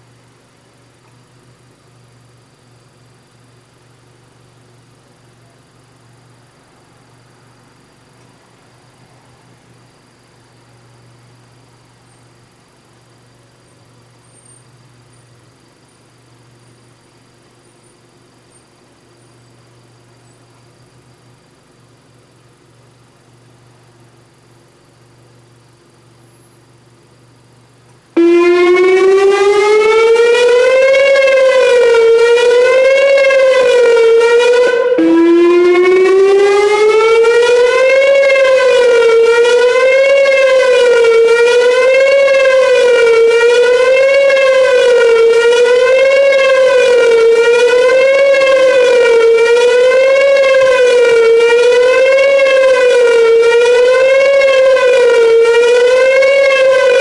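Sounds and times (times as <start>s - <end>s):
wavering warning siren: 28.2s - 57.0s.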